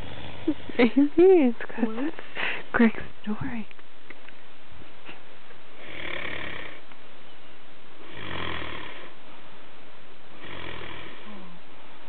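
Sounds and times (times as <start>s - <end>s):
man snoring: 5.8s - 6.8s, 8.0s - 9.1s, 10.4s - 11.6s.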